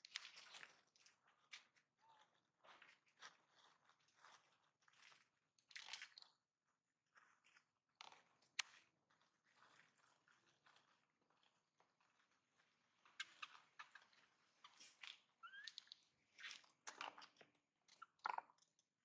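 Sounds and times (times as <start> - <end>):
crunching and rustling: 8.2 - 12.3.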